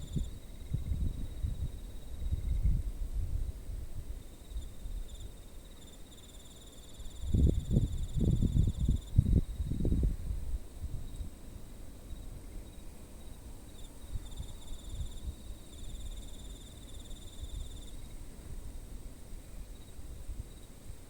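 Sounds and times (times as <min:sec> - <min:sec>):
insects trilling: 0:00.0 - 0:02.7, 0:04.2 - 0:10.1, 0:12.1 - 0:18.2
low steady rumble: 0:00.0 - 0:05.4.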